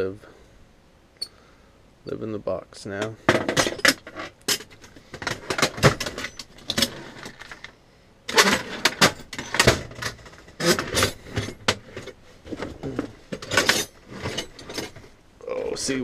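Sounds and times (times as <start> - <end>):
metal tools clattering in drawer: 3.3 - 7.7, 8.3 - 15.1.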